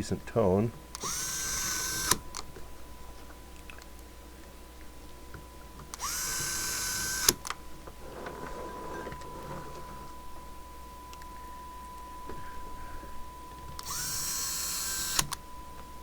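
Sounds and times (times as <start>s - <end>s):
faint steady tone: 0.0s - 16.0s
electric screwdriver motor whining: 1.0s - 2.4s, 5.9s - 7.5s, 13.8s - 15.4s
screwdriver clutch click: 1.0s - 2.4s, 5.9s - 7.6s, 13.8s - 15.4s.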